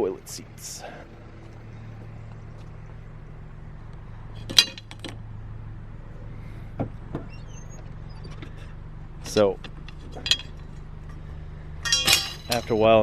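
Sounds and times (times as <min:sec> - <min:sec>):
vehicle engine idling: 0:00.0 - 0:13.0
sharp metal clink: 0:11.8 - 0:12.9.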